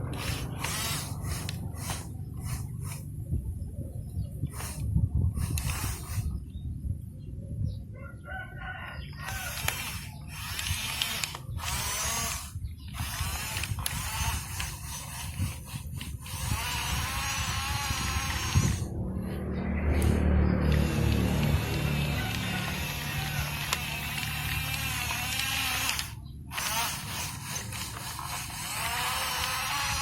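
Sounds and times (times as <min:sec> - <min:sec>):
electric motors and gears whining: 0:00.0 - 0:03.3, 0:04.0 - 0:06.5, 0:09.0 - 0:30.0
low rumble: 0:16.2 - 0:29.1.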